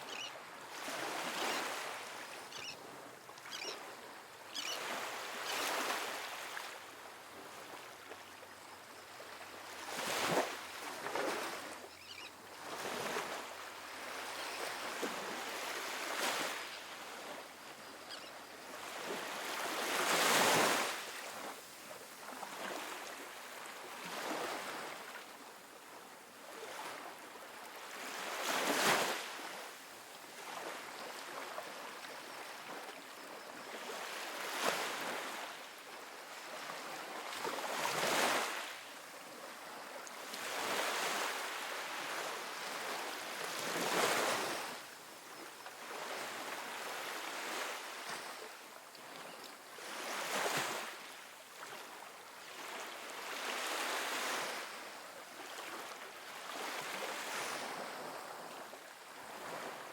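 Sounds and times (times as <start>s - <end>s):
ocean waves breaking on beach: 0.0s - 8.2s, 8.9s - 17.9s, 18.5s - 59.9s.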